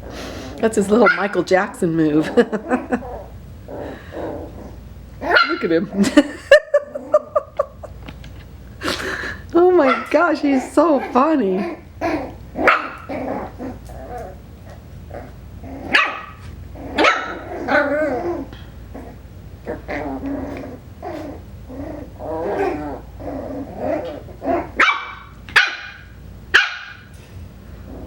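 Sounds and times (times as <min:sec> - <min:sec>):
puppy growling: 0:00.0 - 0:25.4, 0:27.7 - 0:28.0
puppy yapping: 0:01.0 - 0:01.4, 0:05.2 - 0:05.7, 0:09.8 - 0:14.4, 0:15.9 - 0:18.5, 0:24.0 - 0:27.1.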